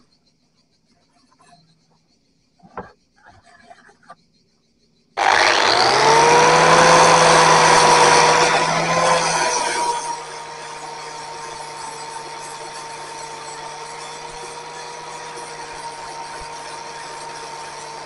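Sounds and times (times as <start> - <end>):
power tool grinding metal: 5.2 - 18.0
power tool spinning with whine: 5.2 - 18.0.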